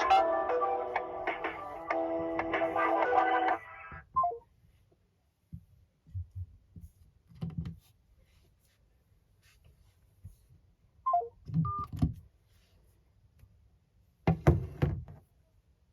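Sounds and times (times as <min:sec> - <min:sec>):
phone hold music: 0:00.0 - 0:04.4.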